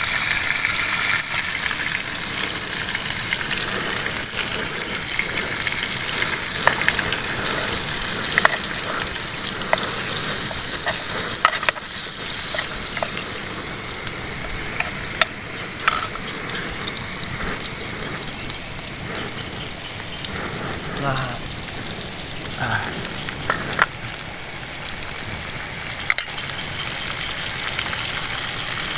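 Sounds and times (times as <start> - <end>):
food sizzling in hot oil: 0.0 - 28.9.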